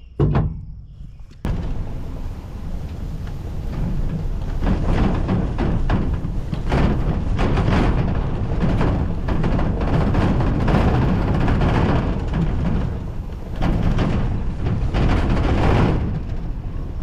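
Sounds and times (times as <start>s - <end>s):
engine low rumble: 0.0s - 17.0s
rattling and clunking: 1.3s - 17.0s.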